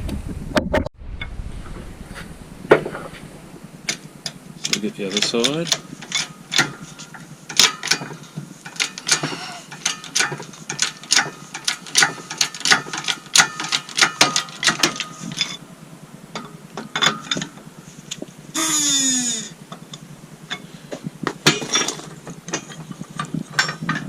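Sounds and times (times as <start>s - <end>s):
press metallic clicks and knocks: 3.9s - 15.6s
faint squeak: 18.5s - 19.6s.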